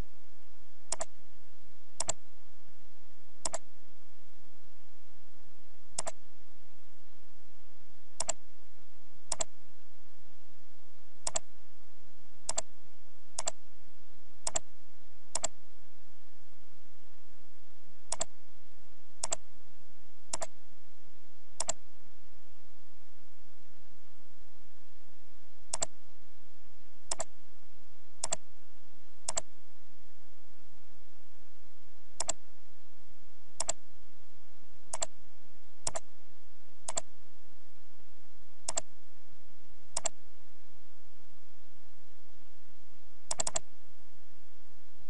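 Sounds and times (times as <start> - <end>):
mouse button clicking: 0.9 - 1.1, 2.0 - 2.2, 3.4 - 3.6, 6.0 - 6.2, 8.2 - 8.4, 9.3 - 9.5, 11.2 - 11.5, 12.5 - 12.7, 13.4 - 13.6, 14.4 - 14.6, 15.4 - 15.6, 18.1 - 18.3, 19.2 - 19.4, 20.3 - 20.5, 21.6 - 21.8, 25.7 - 25.9, 27.1 - 27.3, 28.2 - 28.4, 29.3 - 29.5, 32.2 - 32.4, 33.6 - 33.8, 34.9 - 35.1, 35.8 - 36.0, 36.9 - 37.1, 38.7 - 38.9, 40.0 - 40.2, 43.3 - 43.7.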